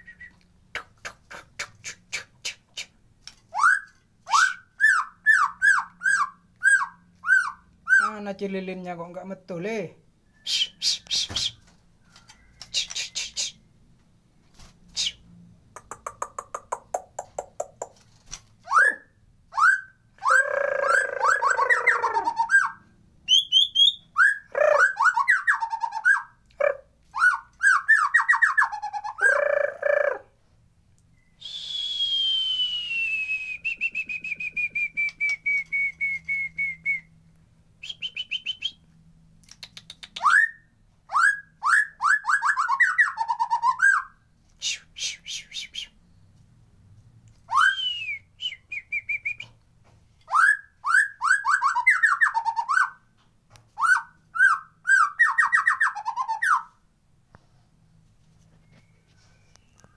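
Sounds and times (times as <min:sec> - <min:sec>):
bird singing whistled phrases: 0:03.5 - 0:08.2, 0:10.2 - 0:11.6, 0:18.7 - 0:26.3, 0:31.1 - 0:37.1, 0:37.8 - 0:38.8, 0:40.1 - 0:44.1, 0:47.5 - 0:49.5, 0:50.3 - 0:53.0, 0:53.8 - 0:56.7.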